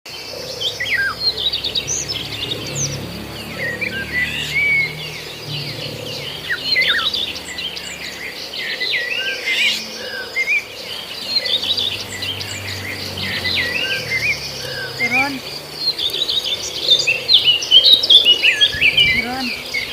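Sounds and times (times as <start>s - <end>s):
small birds chirping: 0.1s - 19.9s
steady high buzz: 0.2s - 19.9s.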